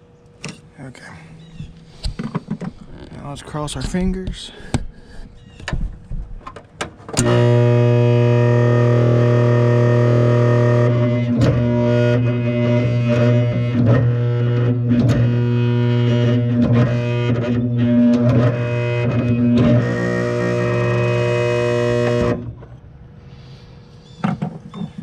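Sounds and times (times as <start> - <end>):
electric motor humming loudly: 7.2 - 22.7.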